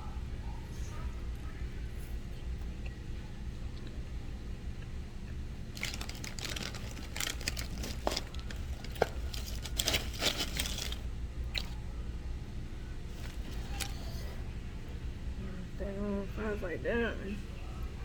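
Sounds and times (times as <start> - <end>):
steady low hum: 0.0 - 18.0
crunching food being eaten: 4.8 - 11.9, 13.0 - 14.4
paper packaging crinkling: 5.7 - 11.7, 13.1 - 14.4.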